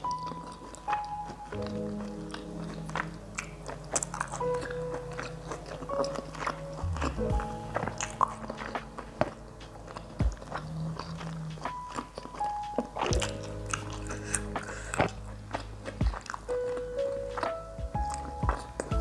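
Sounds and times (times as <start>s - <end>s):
background music: 0.0s - 19.0s
person chewing and crunching: 0.0s - 19.0s.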